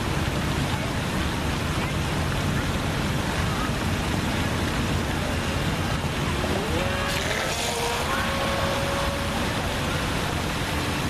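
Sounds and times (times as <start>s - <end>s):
engine running: 0.0s - 11.0s
wind and water noise: 0.0s - 11.0s
rising whine: 6.2s - 11.0s.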